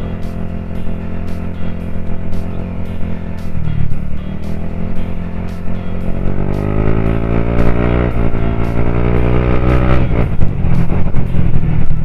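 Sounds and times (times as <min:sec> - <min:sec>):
scooter engine speeding up: 0:00.0 - 0:12.0
wind rumble on microphone: 0:10.0 - 0:12.0.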